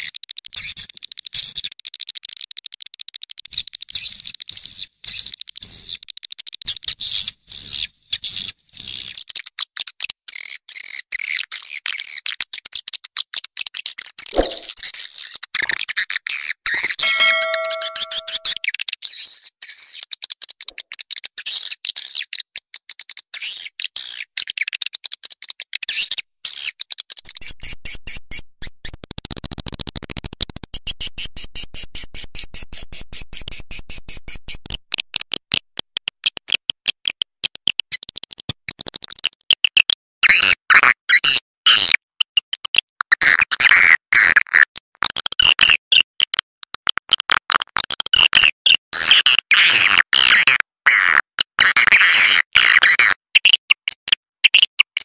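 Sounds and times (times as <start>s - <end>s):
swiftlet chirps and twitters: 17.0s - 18.6s.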